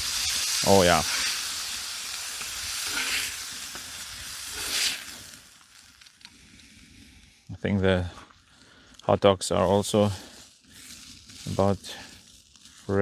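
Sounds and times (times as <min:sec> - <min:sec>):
meat sizzling in a pan: 0:00.0 - 0:07.5, 0:08.3 - 0:13.0.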